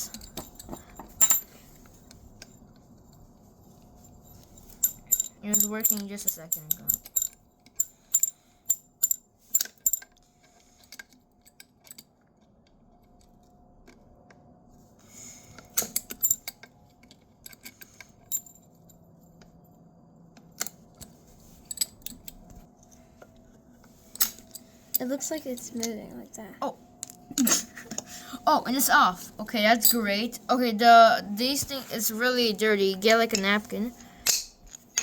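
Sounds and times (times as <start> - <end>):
metal tool clinking on casing: 0.0 - 1.7, 4.4 - 10.2, 15.8 - 16.7, 17.5 - 18.7, 21.6 - 22.4.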